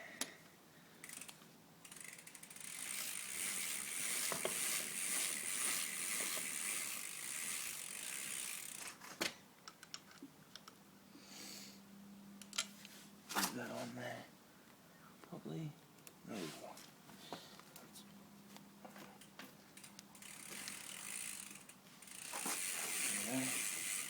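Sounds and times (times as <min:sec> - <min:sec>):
ratchet clicking: 0:01.0 - 0:08.9, 0:19.8 - 0:24.0.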